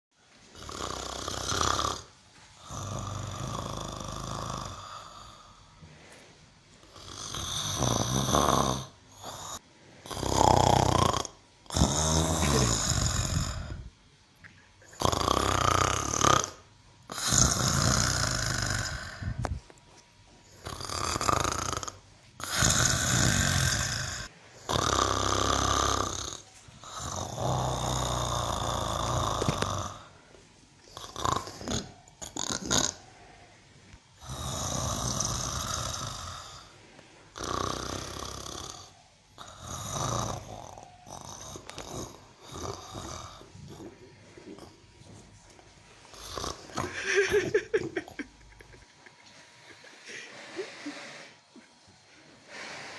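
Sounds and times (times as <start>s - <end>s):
cow snoring: 0.6s - 5.6s, 6.8s - 13.9s, 15.0s - 19.6s, 20.5s - 30.2s, 31.0s - 33.4s, 34.2s - 44.9s, 46.1s - 47.0s.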